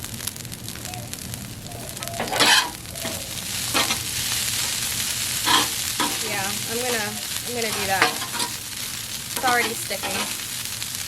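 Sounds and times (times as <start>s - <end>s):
food sizzling on a griddle: 0.0s - 11.0s
spatula scraping griddle: 2.1s - 10.5s.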